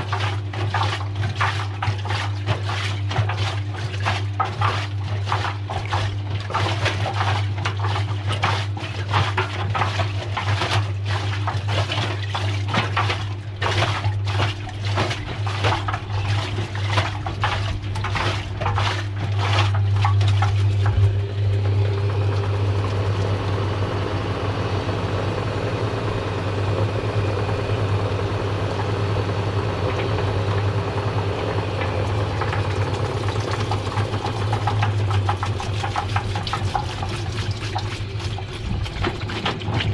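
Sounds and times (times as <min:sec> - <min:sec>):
washing machine humming: 0:00.0 - 0:39.9
washing machine knocking and clattering: 0:00.0 - 0:39.9
water rushing: 0:31.6 - 0:39.9.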